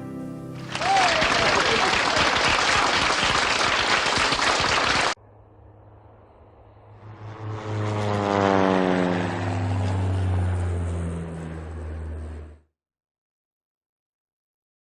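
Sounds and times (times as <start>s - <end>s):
engine passing by: 3.5s - 12.6s.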